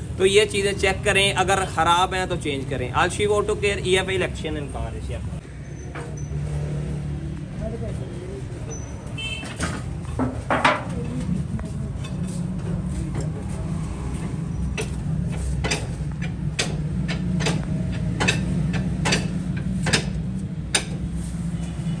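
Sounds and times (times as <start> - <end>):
car driving rumble: 0.0 - 22.0
sharp regular clicking from axle: 14.2 - 21.2.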